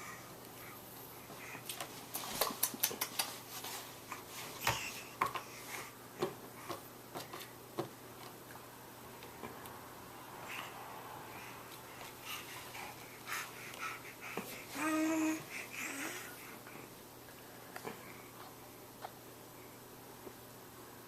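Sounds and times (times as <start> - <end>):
tongue clicks: 2.4 - 3.4.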